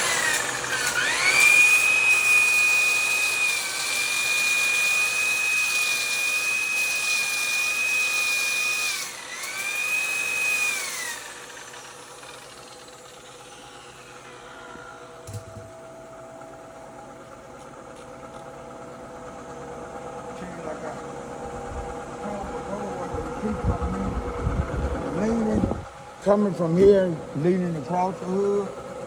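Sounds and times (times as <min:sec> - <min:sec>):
electric polisher whining: 0:00.0 - 0:29.0.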